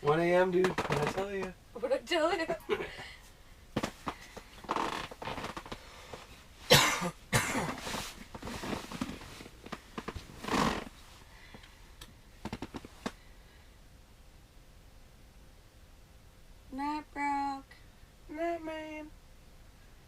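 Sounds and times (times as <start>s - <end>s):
rustling and handling noises: 0.0s - 1.6s, 3.2s - 6.7s, 7.4s - 11.8s, 12.4s - 13.2s.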